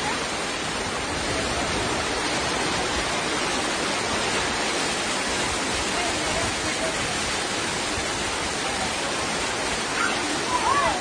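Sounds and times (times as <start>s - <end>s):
floodwater rushing: 0.0s - 11.0s.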